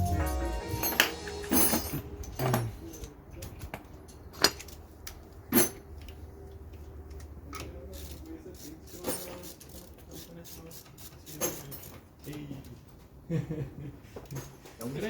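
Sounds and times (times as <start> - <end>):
metal objects clinking: 0.0 - 3.2.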